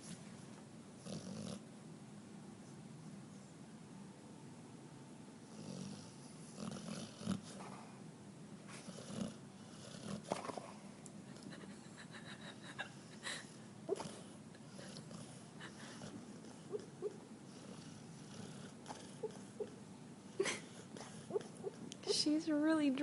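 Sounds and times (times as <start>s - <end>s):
dog snoring and breathing: 0.0s - 1.7s, 5.4s - 8.0s, 8.6s - 11.7s, 12.5s - 21.9s
dog snorts and whimpers: 1.0s - 1.7s, 5.5s - 8.0s, 8.7s - 11.8s, 12.6s - 22.2s.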